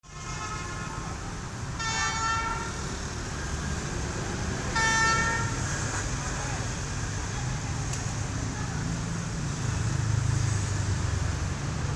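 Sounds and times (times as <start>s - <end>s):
locomotive horn blasts: 0.0s - 1.0s, 1.8s - 2.8s, 4.7s - 5.6s.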